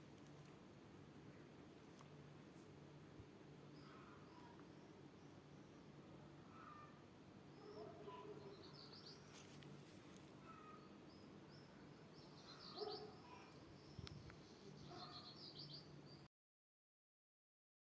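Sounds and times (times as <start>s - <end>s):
small birds chirping: 3.6s - 16.3s.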